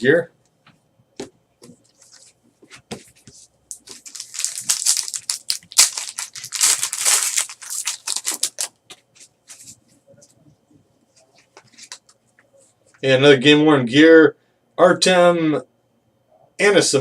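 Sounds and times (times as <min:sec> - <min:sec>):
plastic packaging crackling: 0:03.7 - 0:09.8.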